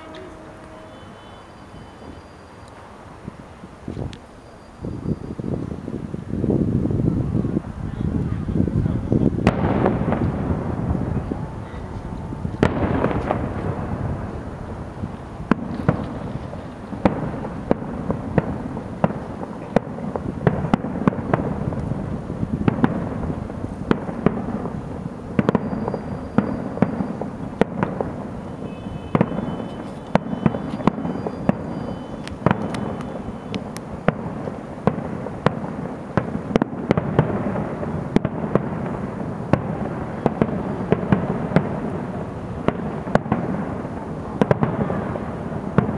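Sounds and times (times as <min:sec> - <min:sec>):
continuous rumble of bursts: 0:00.0 - 0:45.9
firework bangs and crackling pops: 0:05.1 - 0:45.9.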